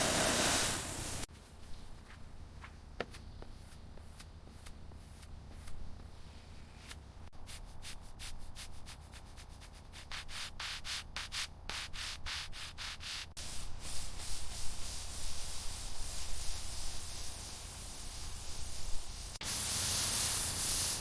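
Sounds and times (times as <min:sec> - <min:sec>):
steady hiss: 0:00.0 - 0:01.3, 0:13.4 - 0:21.0.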